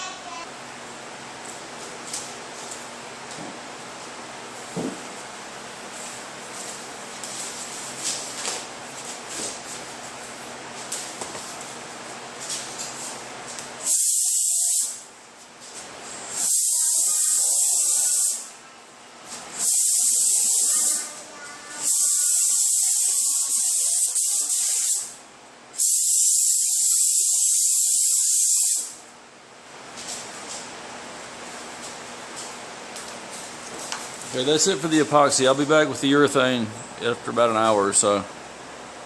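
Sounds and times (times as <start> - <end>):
spray gun hissing: 13.8 - 15.0, 16.3 - 18.5, 19.5 - 21.0, 21.8 - 25.2, 25.8 - 29.0.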